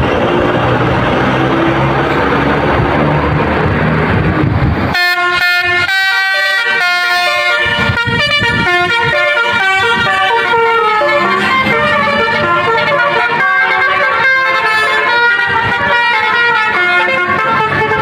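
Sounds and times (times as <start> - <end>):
bus engines and traffic rumble: 0.0 - 18.0
musical bus air horn melody: 4.9 - 18.0.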